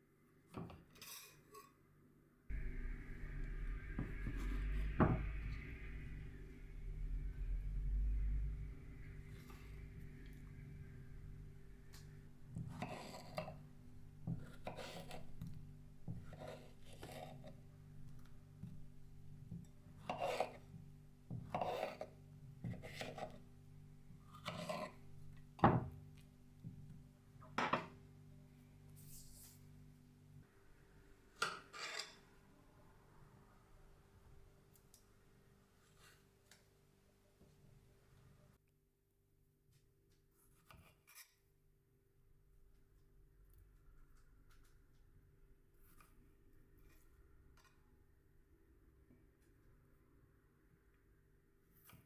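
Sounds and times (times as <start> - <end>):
faint steady hum: 2.5 - 31.5.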